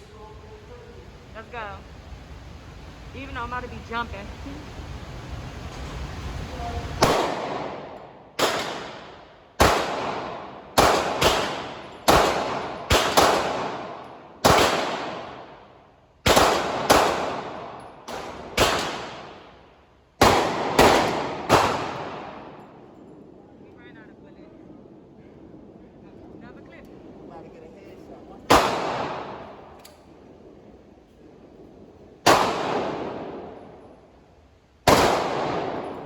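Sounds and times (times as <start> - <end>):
gunshots with echoing decay: 7.0 - 23.4, 28.4 - 34.2, 34.8 - 36.0.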